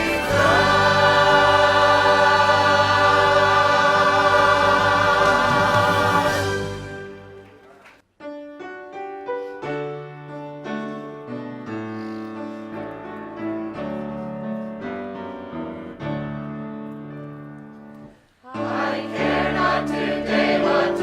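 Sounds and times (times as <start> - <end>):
choir singing hymn chord: 0.0 - 7.4, 18.5 - 21.0
piano playing chords: 0.0 - 7.6.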